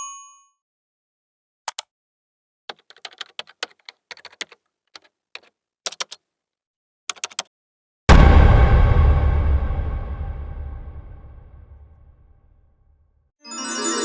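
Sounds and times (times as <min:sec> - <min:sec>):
keyboard typing: 0:01.7 - 0:01.9, 0:02.7 - 0:06.2, 0:07.1 - 0:07.5.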